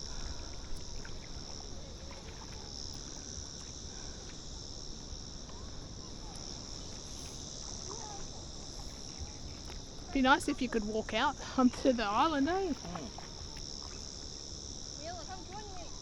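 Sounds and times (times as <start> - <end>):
insect chorus: 0.0 - 16.0.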